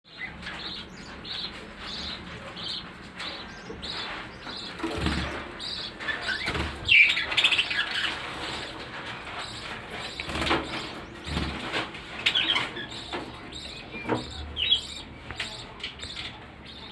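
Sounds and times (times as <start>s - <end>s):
budgerigars chirping: 0.1s - 16.9s.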